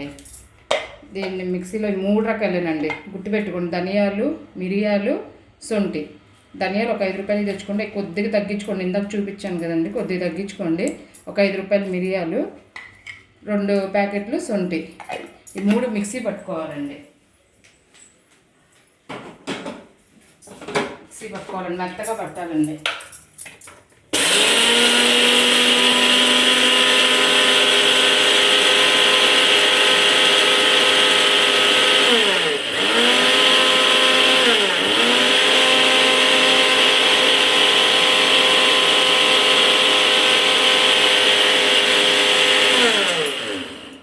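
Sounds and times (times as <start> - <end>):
mixer grinder whining: 24.2 - 44.0.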